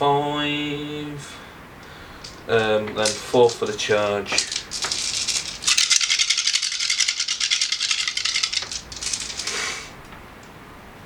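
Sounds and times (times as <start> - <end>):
dice rattling in hands: 2.2 - 9.9.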